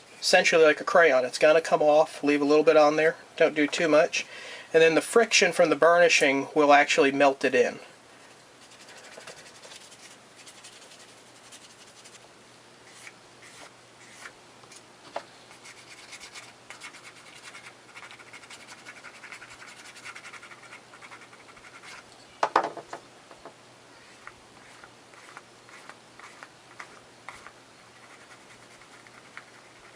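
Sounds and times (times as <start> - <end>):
leather edges being rubbed: 8.6 - 12.3, 12.9 - 14.8, 15.6 - 22.0, 24.0 - 29.9
louder knocks clattering: 22.4 - 23.5.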